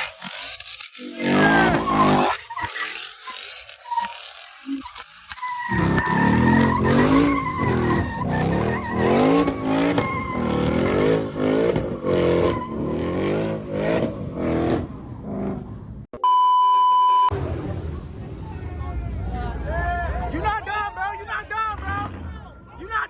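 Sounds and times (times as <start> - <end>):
tires squealing: 0.0 - 15.6, 17.4 - 22.9
car engine revving: 0.0 - 16.1
electronic beep: 16.2 - 17.4.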